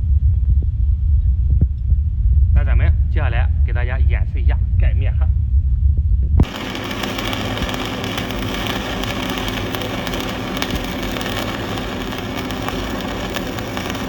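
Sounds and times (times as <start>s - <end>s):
faint steady hum: 5.4s - 14.0s
welding arc crackling and sizzling: 6.4s - 14.0s.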